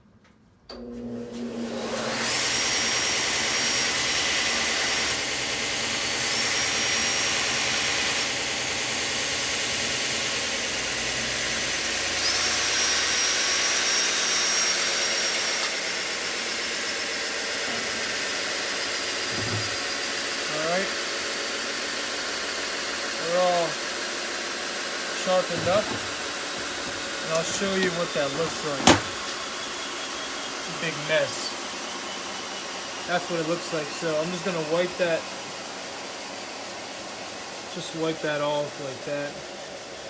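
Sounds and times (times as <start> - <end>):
grinder motor running: 16.1 - 24.1, 25.2 - 30.9.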